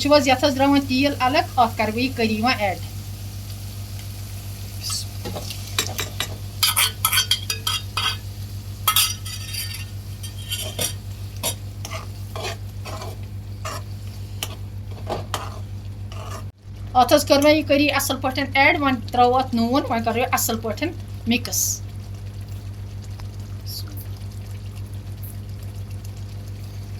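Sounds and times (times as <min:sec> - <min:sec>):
oil sizzling: 0:00.0 - 0:26.9
steady low hum: 0:00.0 - 0:26.9
spoon scraping a pot: 0:05.8 - 0:08.2, 0:08.9 - 0:14.6, 0:15.2 - 0:16.5.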